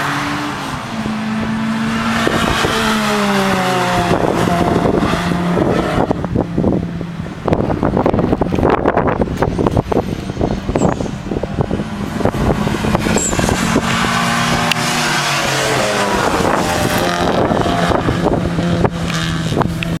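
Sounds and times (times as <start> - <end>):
tyre and wind rush: 0.0 - 20.0
wind buffeting microphone: 0.7 - 20.0
racing car passing by: 10.4 - 19.9.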